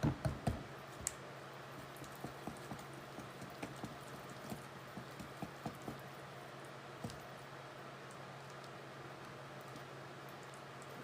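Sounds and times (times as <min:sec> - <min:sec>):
low steady hum: 0:00.0 - 0:11.0
utensil tapping mixing bowl: 0:01.8 - 0:06.1.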